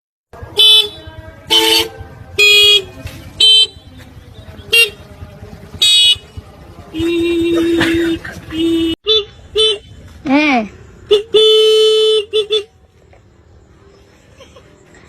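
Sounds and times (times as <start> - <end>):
vehicle horn honking: 0.4 - 10.1, 11.0 - 12.8.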